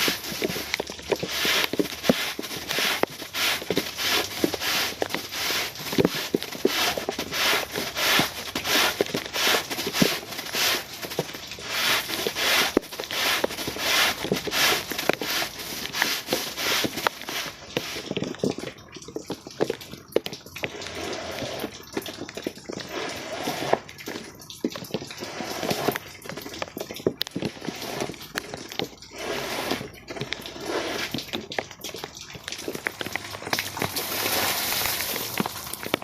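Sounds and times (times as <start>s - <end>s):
scraper scraping wet carpet: 0.0s - 18.3s, 20.7s - 21.8s, 22.8s - 23.9s, 25.2s - 26.0s, 27.4s - 31.3s, 32.9s - 35.9s
rain falling: 0.0s - 36.0s.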